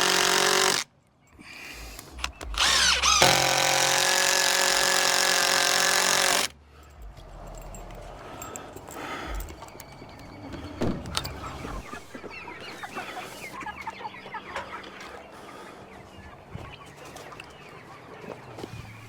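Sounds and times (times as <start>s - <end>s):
chickens clucking: 8.2s - 19.0s.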